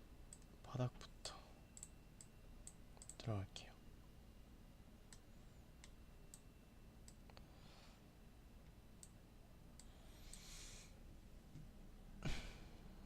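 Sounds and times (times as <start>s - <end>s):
faint computer mouse clicks: 0.3s - 0.5s, 1.8s - 3.2s, 5.1s - 7.4s.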